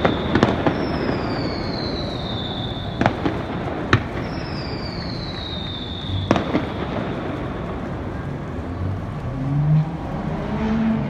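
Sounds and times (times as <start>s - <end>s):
firework whistle falling in pitch: 0.0s - 7.3s
firework bangs: 0.0s - 9.2s
general rumble: 0.0s - 11.0s.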